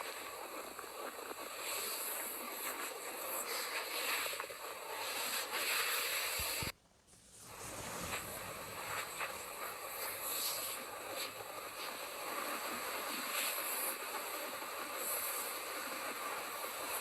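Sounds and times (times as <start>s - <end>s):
heavy hiss: 0.0s - 17.0s.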